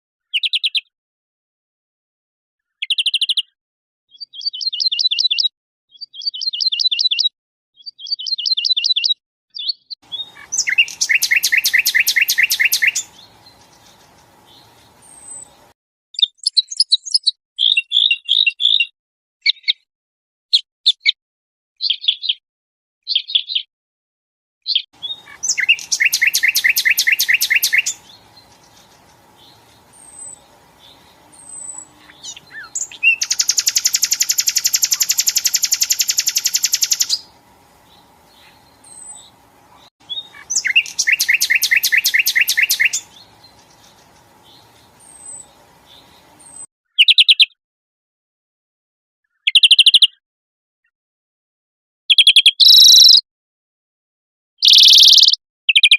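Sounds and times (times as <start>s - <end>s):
bird chirps and whistled notes: 2.7s - 15.5s, 16.2s - 18.9s, 19.5s - 19.9s, 21.8s - 22.4s, 23.1s - 23.7s, 24.8s - 37.3s, 37.9s - 47.6s, 49.3s - 50.2s, 52.1s - 53.2s, 54.6s - 55.9s
songbird fast trills: 10.1s - 15.6s, 25.0s - 46.6s, 52.5s - 53.2s, 54.6s - 55.9s
faint steady hum: 10.1s - 15.7s, 25.0s - 46.6s.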